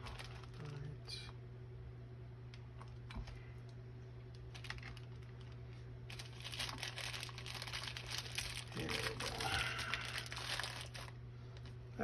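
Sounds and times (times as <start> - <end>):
plastic bag crinkling: 0.0 - 1.0, 4.3 - 11.8.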